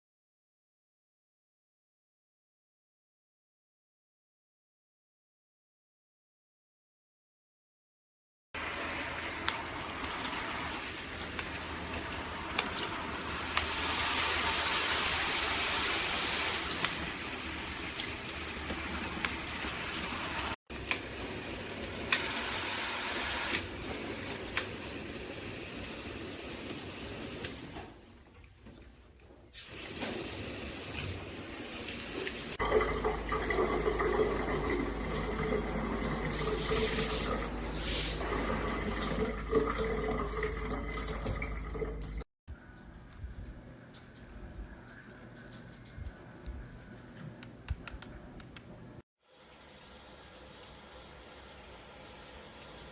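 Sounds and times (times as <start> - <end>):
water spraying from shower head: 8.6 - 27.8, 29.6 - 39.1.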